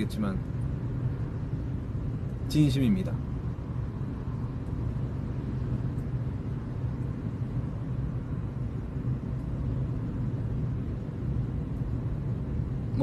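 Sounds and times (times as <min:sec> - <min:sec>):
low background rumble: 0:00.0 - 0:13.0.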